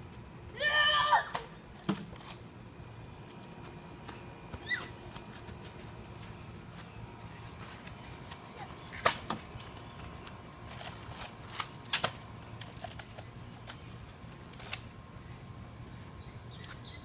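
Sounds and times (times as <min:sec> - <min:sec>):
toy blasters clicking and snapping: 0:10.6 - 0:13.8.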